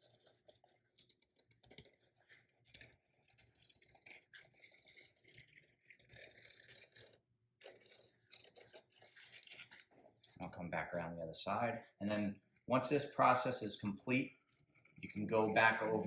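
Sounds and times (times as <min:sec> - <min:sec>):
razor blade scoring vinyl: 0:00.0 - 0:10.0.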